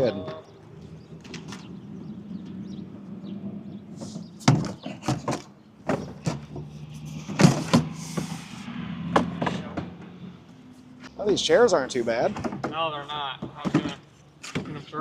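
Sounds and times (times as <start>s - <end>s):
sharp knocks and clunks: 4.0s - 8.4s, 9.0s - 10.2s, 12.2s - 15.0s.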